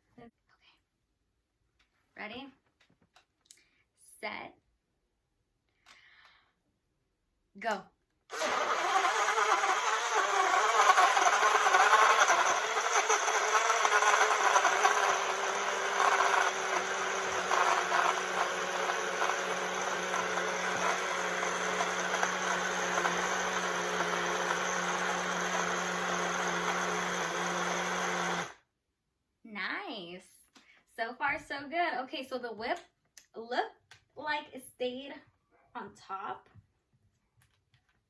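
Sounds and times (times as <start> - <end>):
blender whirring: 8.3 - 28.6.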